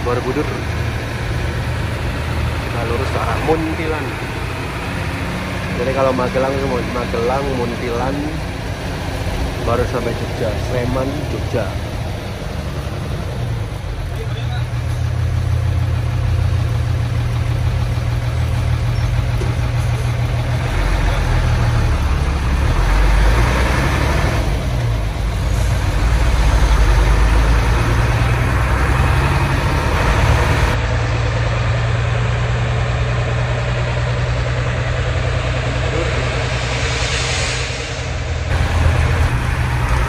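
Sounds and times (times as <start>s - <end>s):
bus diesel engine running: 0.0s - 40.0s.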